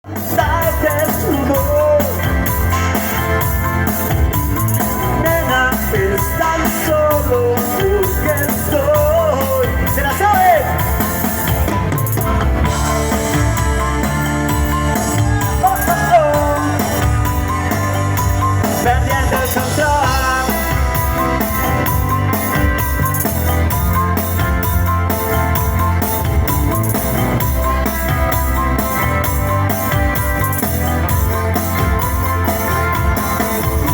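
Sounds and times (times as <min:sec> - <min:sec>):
drums beating: 0:00.0 - 0:33.9
rock band playing live: 0:00.0 - 0:33.9
person singing: 0:00.1 - 0:02.8, 0:04.9 - 0:11.1, 0:15.0 - 0:17.7, 0:18.4 - 0:22.2.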